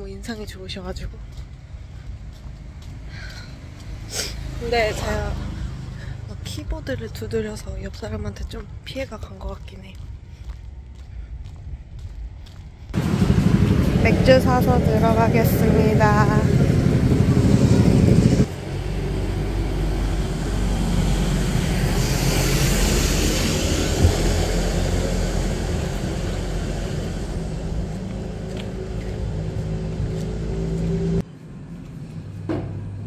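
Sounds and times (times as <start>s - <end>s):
road traffic noise: 0.0s - 33.0s
low hum: 10.0s - 33.0s.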